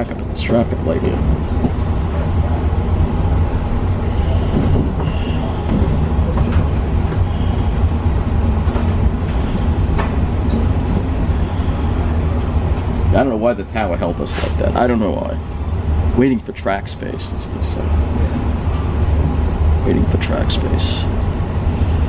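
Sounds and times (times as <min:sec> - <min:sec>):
train rumbling from inside: 0:00.0 - 0:22.0.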